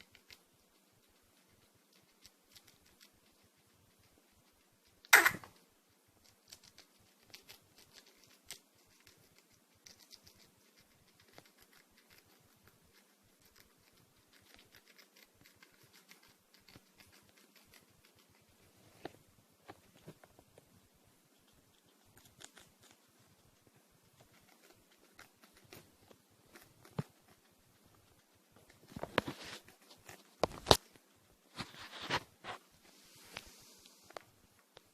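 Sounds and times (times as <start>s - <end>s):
scratching and clicking: 0.0s - 32.6s
guinea pig coughing: 5.0s - 5.6s.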